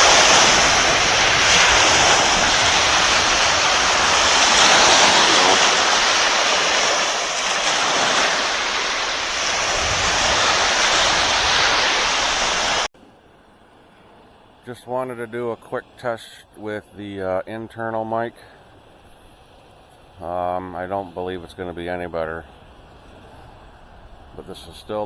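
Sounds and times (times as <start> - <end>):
river water rushing: 0.0 - 12.9.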